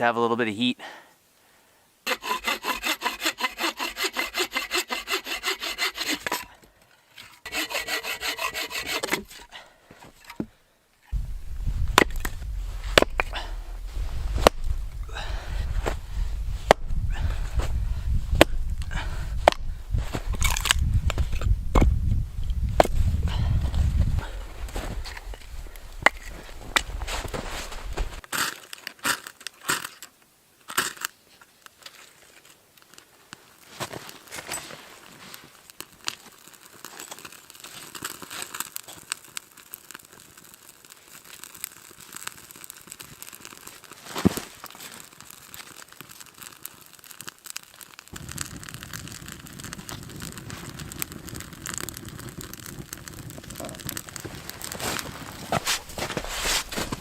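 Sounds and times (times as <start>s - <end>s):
kindling crinkling and snapping: 5.0s - 57.0s
steady low rush: 11.2s - 28.2s.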